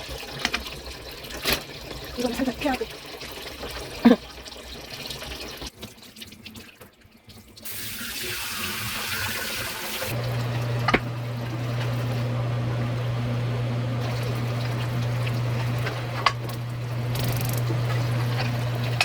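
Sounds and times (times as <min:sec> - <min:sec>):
water running from tap: 0:00.0 - 0:19.0
low electric hum: 0:10.1 - 0:19.0.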